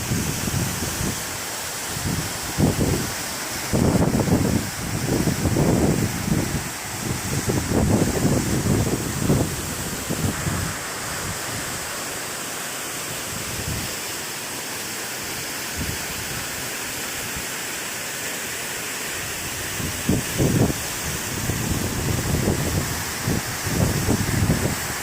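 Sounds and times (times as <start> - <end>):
waterfall rushing: 0.0 - 25.0
wind buffeting microphone: 3.7 - 11.7, 19.8 - 24.9.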